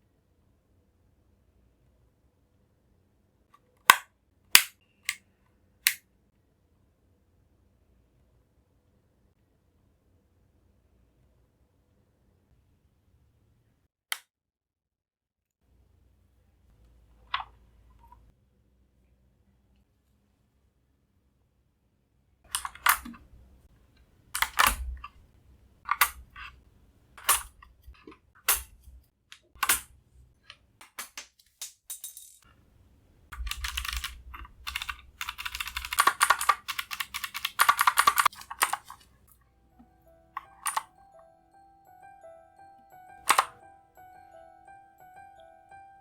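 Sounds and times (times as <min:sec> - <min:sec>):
plastic keyboard keycaps clicking: 0:33.4 - 0:39.0, 0:40.4 - 0:40.9, 0:43.2 - 0:43.6
soft background music: 0:39.3 - 0:46.0.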